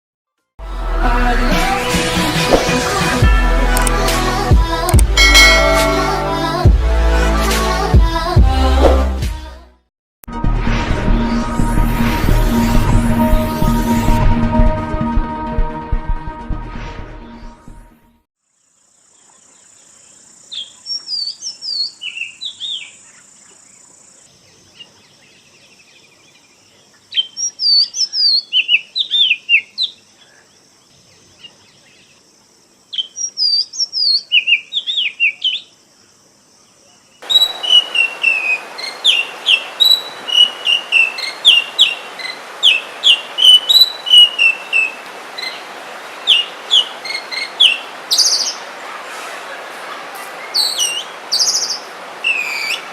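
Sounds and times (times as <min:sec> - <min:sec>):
bird singing whistled notes: 0:37.2 - 0:45.6, 0:46.3 - 0:48.6, 0:50.6 - 0:52.8
steady hiss: 0:37.2 - 0:52.9.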